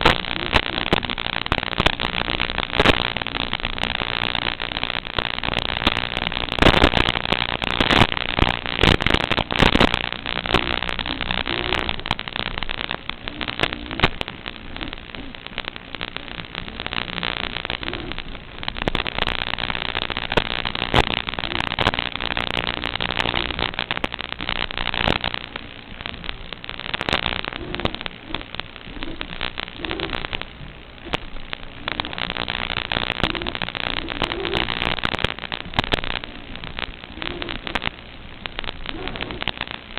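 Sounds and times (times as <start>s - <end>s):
loud crackling static: 0.0s - 39.9s
steady low hum: 0.0s - 39.9s.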